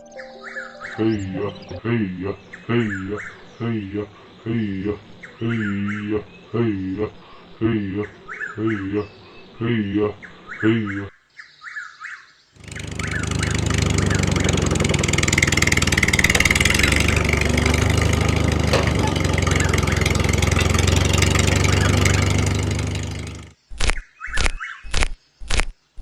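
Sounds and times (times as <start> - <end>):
small engine running: 12.6 - 23.6.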